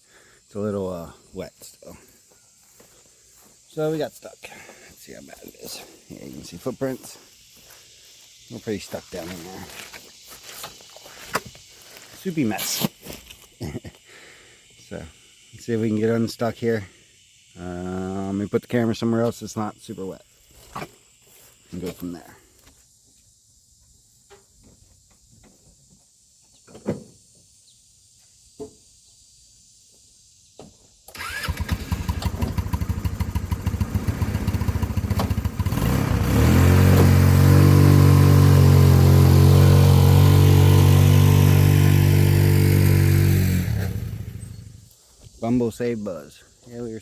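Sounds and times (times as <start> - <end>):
vehicle engine revving: 31.2 - 44.8.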